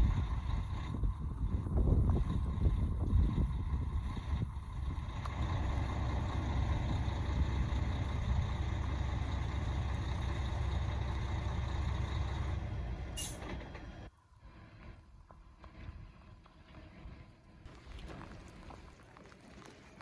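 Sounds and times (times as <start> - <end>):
helicopter rotor and turbine: 0.0 - 14.0.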